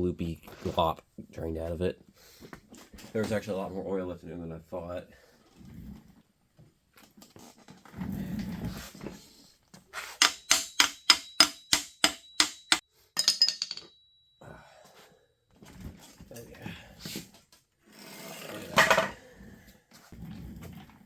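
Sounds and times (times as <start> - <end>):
sharp metal taps: 10.2 - 13.9
ringing metal clink: 10.2 - 14.5.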